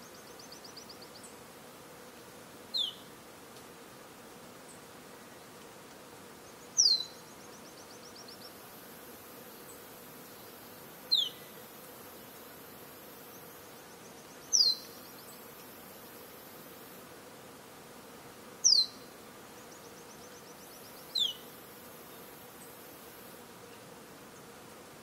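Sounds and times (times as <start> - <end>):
insect drone: 6.4 - 17.1, 18.6 - 23.5.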